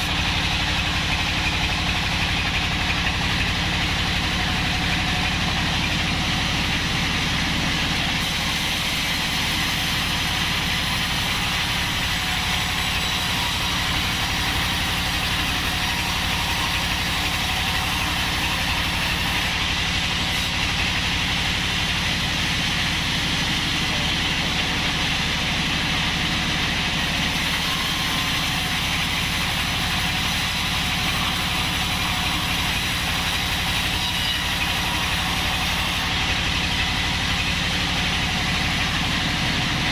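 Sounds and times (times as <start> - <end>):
bandsaw motor hum: 0.0 - 39.9
bandsaw hissing: 8.2 - 21.7, 27.1 - 36.8.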